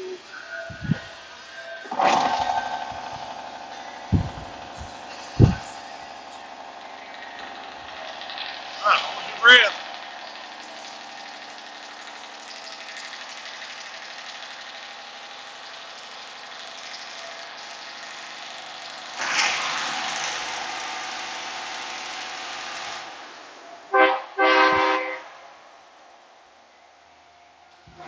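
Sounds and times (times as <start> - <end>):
rushing noise: 0.0 - 11.2
road noise: 0.0 - 28.0
truck engine: 0.0 - 28.0
air horn: 23.9 - 25.4.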